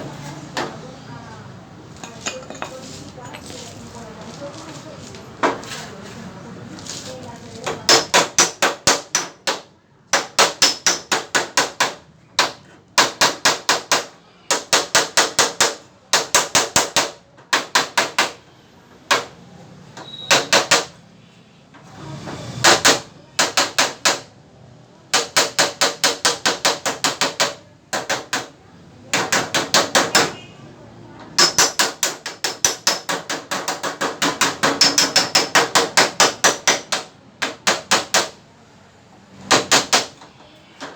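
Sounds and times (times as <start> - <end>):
hammer striking car fender: 7.6 - 18.4, 20.3 - 21.0, 22.6 - 24.3, 25.1 - 30.5, 31.3 - 38.4, 39.4 - 40.9.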